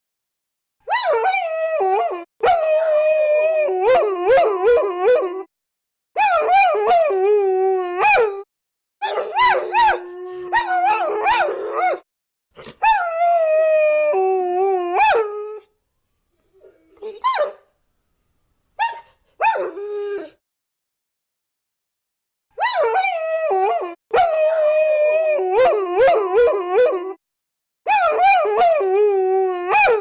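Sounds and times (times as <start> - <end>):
dogs howling: 9.0 - 12.0.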